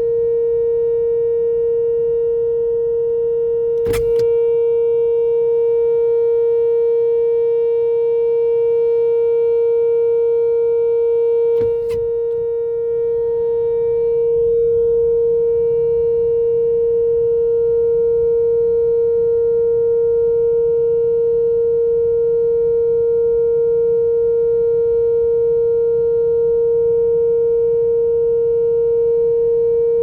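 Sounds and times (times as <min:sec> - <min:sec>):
steady warning siren tone: 0:00.0 - 0:30.0
brief clicks: 0:03.8 - 0:04.3, 0:11.6 - 0:15.2.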